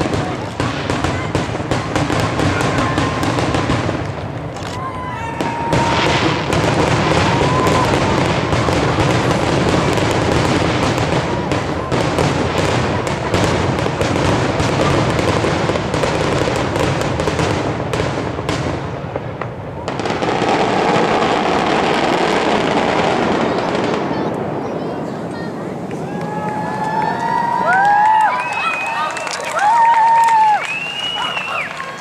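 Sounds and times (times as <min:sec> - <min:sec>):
fireworks banging and crackling: 0:00.0 - 0:32.0
wavering firework whistle: 0:04.8 - 0:10.1, 0:25.9 - 0:32.0.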